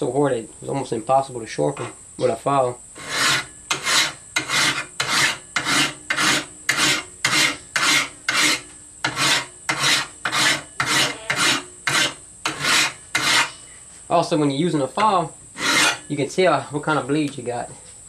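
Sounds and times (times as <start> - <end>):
hand file rasping on steel: 3.0 - 13.6, 15.6 - 16.1.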